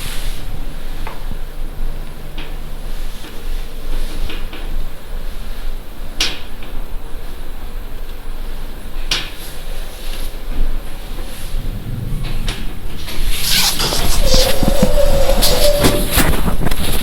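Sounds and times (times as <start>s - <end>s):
lift humming: 11.2s - 16.2s.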